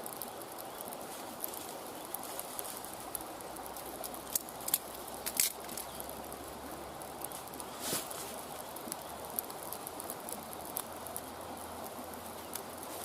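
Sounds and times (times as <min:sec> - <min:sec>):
fire crackling: 0:00.0 - 0:13.0
sharp fire pops: 0:00.0 - 0:13.0.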